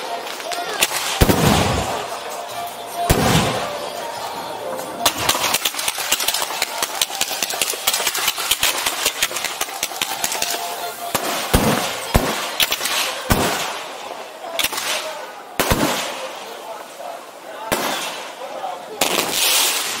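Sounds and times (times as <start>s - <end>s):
firecrackers popping: 0.0s - 16.6s, 17.6s - 20.0s.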